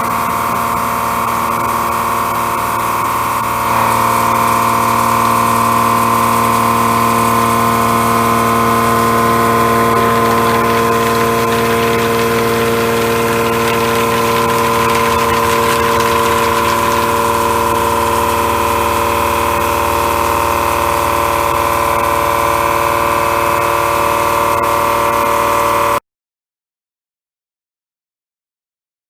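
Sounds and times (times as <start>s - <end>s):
milling cutter machining steel: 9.3s - 18.3s.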